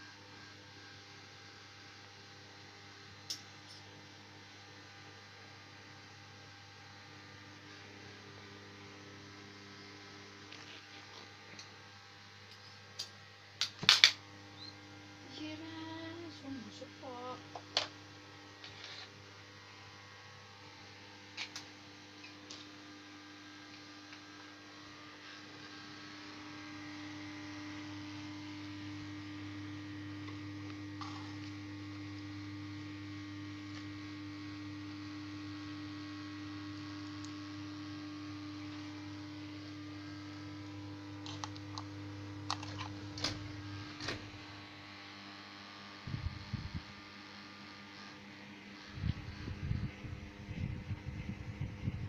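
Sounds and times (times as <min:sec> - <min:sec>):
fan motor humming: 0:13.7 - 0:52.0.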